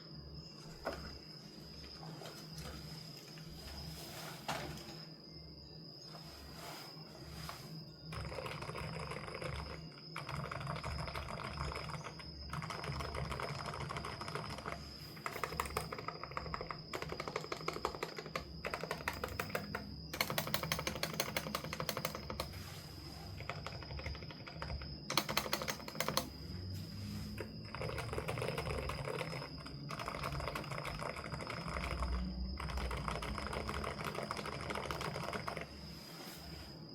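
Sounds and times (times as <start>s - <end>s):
mechanical keyboard typing: 8.1s - 22.6s, 23.4s - 26.4s, 27.6s - 35.8s.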